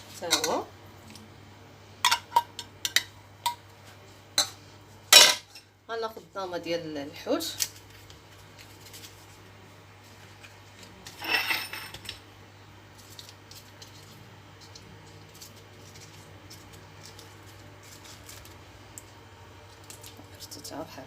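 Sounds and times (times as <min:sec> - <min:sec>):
utensils and dishes handled: 0:00.0 - 0:00.6, 0:10.4 - 0:12.2.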